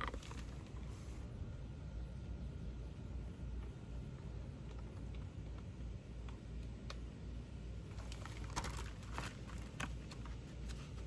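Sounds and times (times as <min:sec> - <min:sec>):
low steady hum: 0:00.0 - 0:11.0
book pages rustling: 0:07.9 - 0:11.0.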